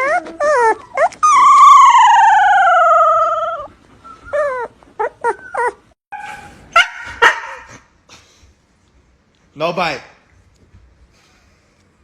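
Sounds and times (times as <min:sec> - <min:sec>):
dog howling: 0:00.0 - 0:03.7
dog whining yelps: 0:00.0 - 0:07.8.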